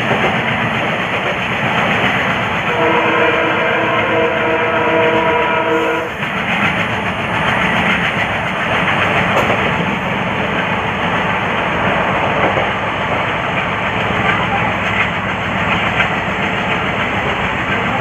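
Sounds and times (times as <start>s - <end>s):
train rumble and wheel clatter: 0.0s - 18.0s
locomotive horn: 2.7s - 6.2s.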